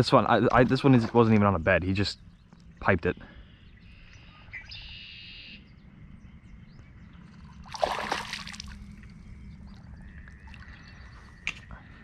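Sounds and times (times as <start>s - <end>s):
water splash: 7.7s - 8.9s
water trickling: 7.7s - 11.0s.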